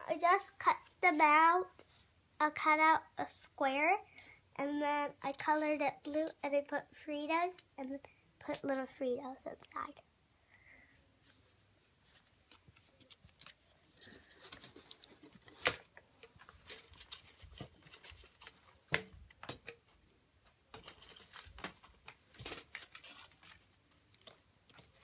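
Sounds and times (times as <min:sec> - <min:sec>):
paper props rustling: 0:11.3 - 0:19.0, 0:20.7 - 0:25.0.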